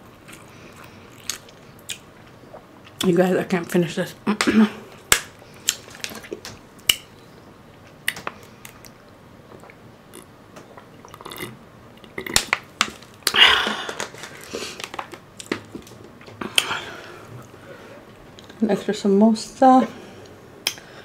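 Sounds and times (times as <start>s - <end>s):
chewing: 0.0s - 3.1s
mouth clicks and smacks: 20.6s - 20.8s.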